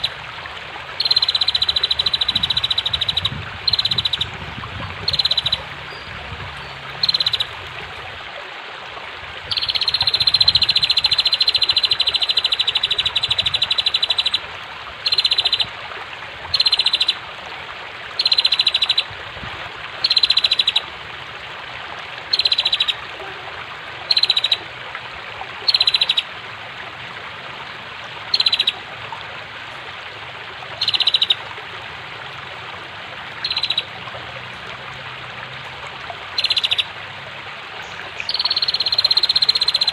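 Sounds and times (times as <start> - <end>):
flowing water rushing: 0.0 - 39.9
bird ticking trills: 1.0 - 4.3, 5.0 - 7.6, 9.5 - 14.4, 15.0 - 15.7, 16.5 - 17.2, 18.2 - 19.0, 20.0 - 20.8, 22.3 - 23.0, 24.1 - 24.6, 25.7 - 26.2, 28.3 - 28.8, 30.8 - 31.4, 33.4 - 33.9, 36.4 - 36.9, 37.8 - 39.9.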